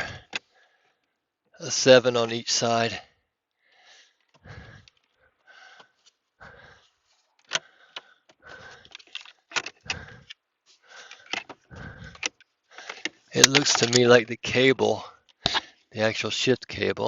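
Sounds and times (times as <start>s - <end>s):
breathing into a microphone: 0.0s - 1.1s, 3.6s - 13.3s, 15.0s - 15.9s
tools clicking on plastic trim: 11.1s - 14.1s.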